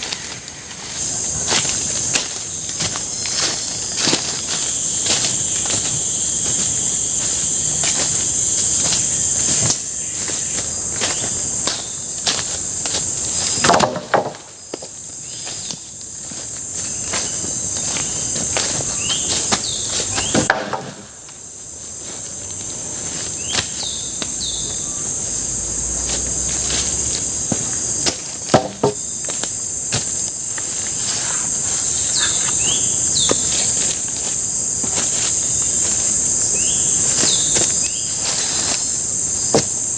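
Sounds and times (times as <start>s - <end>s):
insects shrilling: 0.8s - 13.6s, 22.3s - 39.9s.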